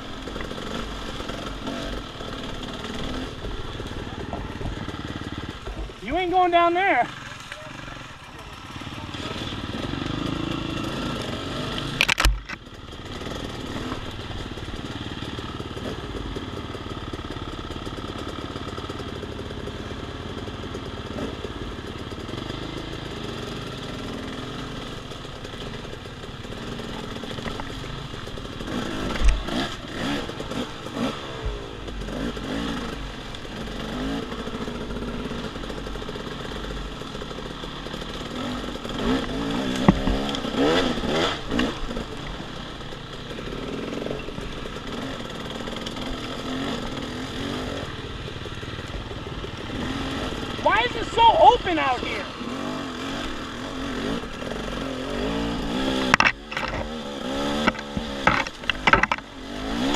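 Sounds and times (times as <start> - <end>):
dirt bike engine running: 0.0 - 59.9
sharp clattering knocks: 55.9 - 59.3.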